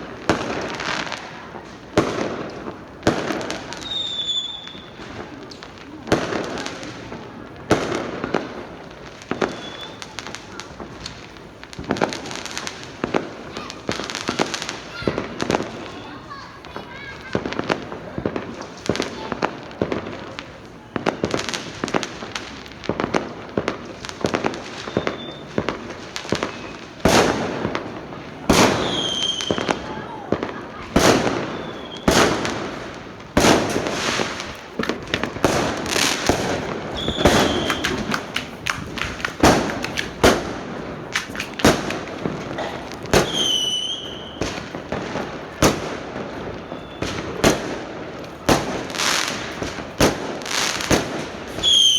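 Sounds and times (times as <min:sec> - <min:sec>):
fireworks whistling: 0:00.0 - 0:06.8, 0:07.7 - 0:11.2, 0:23.6 - 0:51.9
fireworks bangs and crackles: 0:00.0 - 0:51.9.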